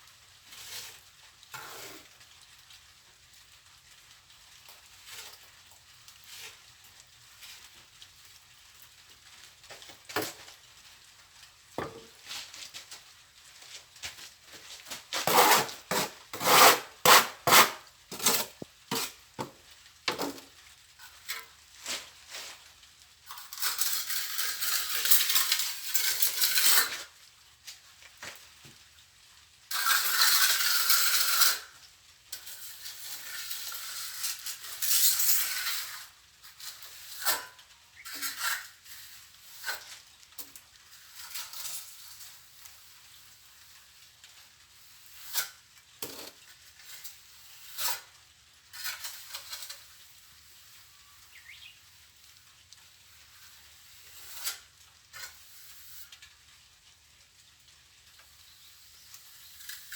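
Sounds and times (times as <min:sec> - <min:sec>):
trowel scraping on mortar: 0:00.6 - 0:02.1, 0:14.9 - 0:20.5, 0:23.5 - 0:27.1, 0:29.7 - 0:31.7, 0:32.4 - 0:40.0, 0:44.8 - 0:48.1, 0:48.7 - 0:49.8, 0:53.4 - 0:56.2.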